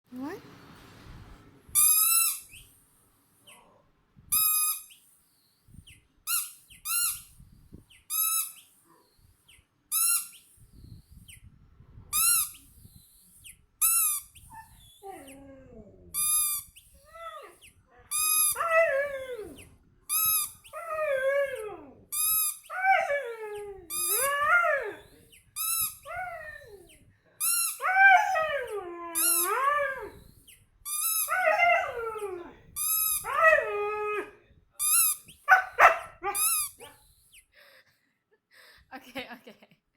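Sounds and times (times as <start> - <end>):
squeaky toy squeaking: 1.8 - 2.6, 4.3 - 5.0, 6.3 - 7.3, 8.1 - 8.6, 9.9 - 10.4, 12.2 - 12.6, 13.8 - 14.6, 16.2 - 16.9, 18.1 - 18.8, 20.1 - 20.8, 22.1 - 22.8, 23.9 - 24.3, 25.6 - 26.7, 27.4 - 28.2, 29.2 - 29.6, 30.9 - 32.0, 32.8 - 33.4, 34.8 - 37.0
dog howling: 18.6 - 19.6, 20.7 - 22.0, 22.7 - 25.0, 27.8 - 30.2, 31.3 - 32.6, 33.2 - 34.4, 35.5 - 36.9.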